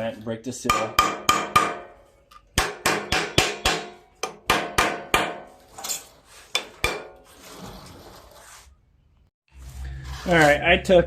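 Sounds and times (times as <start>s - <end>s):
hammer striking metal pry bar: 0.6s - 7.2s
soft scraping: 7.3s - 8.9s, 9.5s - 11.0s.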